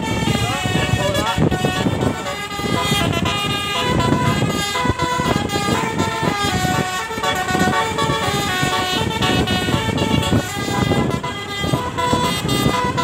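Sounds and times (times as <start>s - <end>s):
multi-tone bus horn tune: 0.0s - 13.0s.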